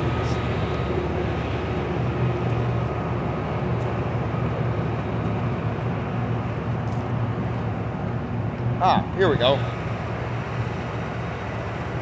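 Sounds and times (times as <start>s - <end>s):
diesel engine idling: 0.0s - 12.0s.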